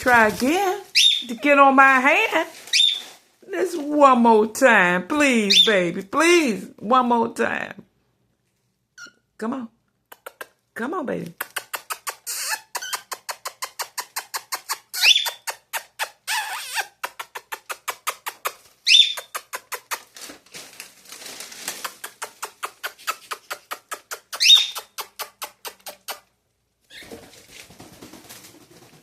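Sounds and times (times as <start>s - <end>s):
cockatiel chirping: 0.9s - 1.3s, 2.7s - 3.1s, 11.8s - 15.6s, 18.2s - 20.0s, 24.4s - 25.1s
brief rustle: 19.8s - 23.4s.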